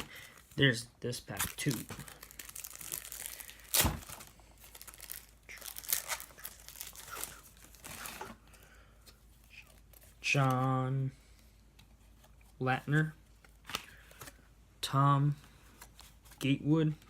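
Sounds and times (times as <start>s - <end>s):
foil wrapper tearing and crinkling: 1.4s - 8.2s.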